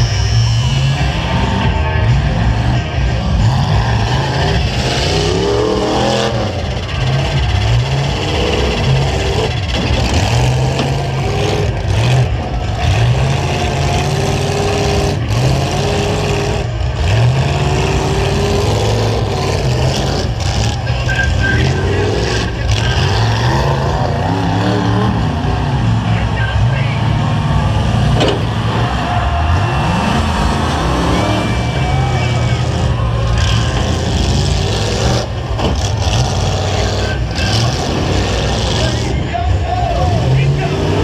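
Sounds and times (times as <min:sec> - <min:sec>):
truck engines revving: 0:00.0 - 0:41.0.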